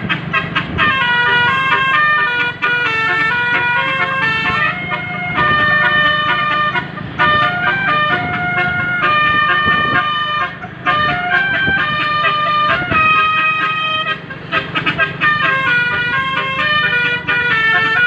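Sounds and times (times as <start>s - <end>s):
multi-tone bus horn tune: 0.0s - 18.0s.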